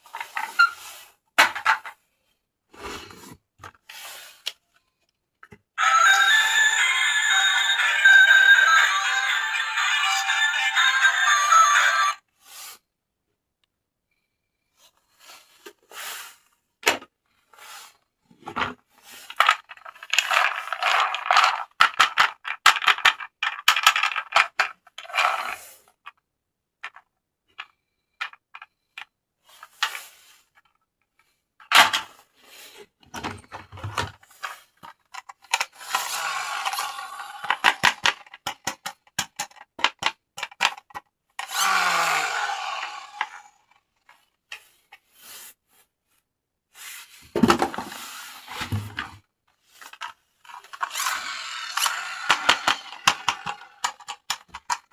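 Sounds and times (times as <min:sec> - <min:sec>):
plastic toys clicking and clinking: 0:19.2 - 0:26.2, 0:26.8 - 0:30.0, 0:33.2 - 0:41.6, 0:49.7 - 0:54.9.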